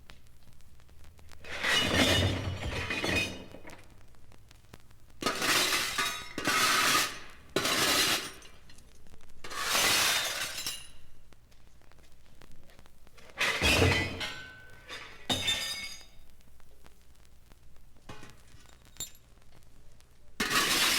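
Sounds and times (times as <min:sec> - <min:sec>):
glass breaking: 0:01.6 - 0:03.8, 0:09.5 - 0:11.1, 0:13.4 - 0:16.2, 0:18.1 - 0:19.2, 0:20.4 - 0:20.9.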